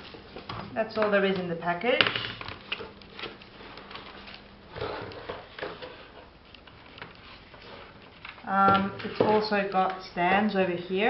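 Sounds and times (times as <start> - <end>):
packaging rustling: 2.4 - 9.2.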